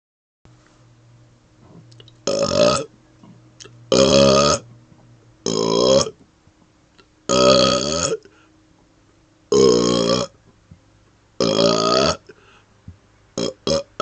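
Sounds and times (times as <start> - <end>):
man burping: 1.9 - 2.9, 3.6 - 4.7, 5.4 - 6.2, 7.3 - 8.3, 9.5 - 10.4, 11.4 - 12.4, 13.4 - 14.0.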